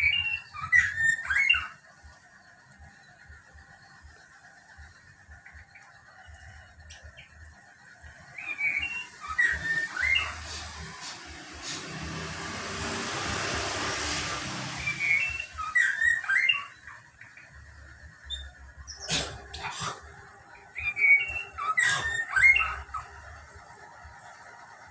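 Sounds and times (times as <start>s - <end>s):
bird chirping: 0.0s - 1.8s, 8.1s - 23.5s
rushing noise: 8.5s - 15.8s.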